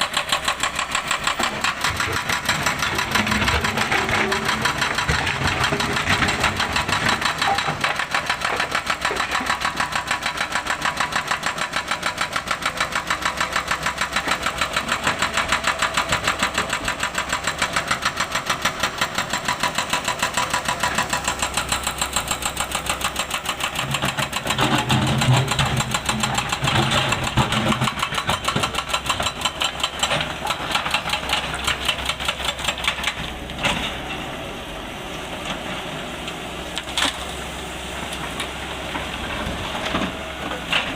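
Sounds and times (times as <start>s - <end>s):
excavator diesel engine chugging: 0.0s - 40.9s.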